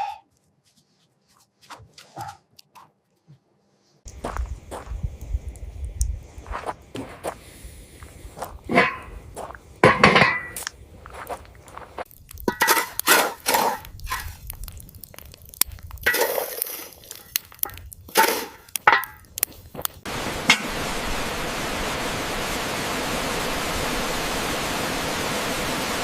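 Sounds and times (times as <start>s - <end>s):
cookware and utensils clattering: 9.8s - 10.6s, 12.5s - 14.3s
steady hiss: 20.0s - 26.0s.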